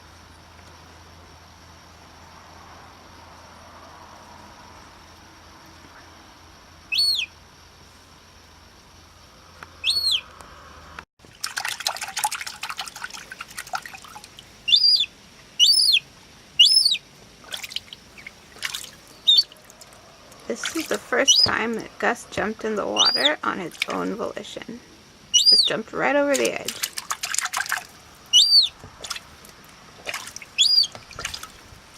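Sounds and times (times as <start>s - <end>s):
gull chick peeping: 6.9s - 7.3s, 9.8s - 10.3s, 14.7s - 19.6s, 20.5s - 21.8s, 22.8s - 23.4s, 25.3s - 25.8s, 28.3s - 29.2s, 30.0s - 31.4s
water splashing: 11.2s - 14.8s, 17.2s - 31.9s.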